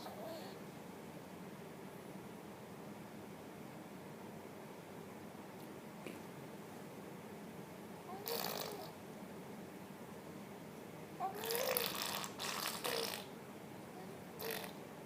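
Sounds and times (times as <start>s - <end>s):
baby blowing spit bubbles: 8.2s - 8.9s, 11.4s - 13.3s, 14.4s - 14.7s.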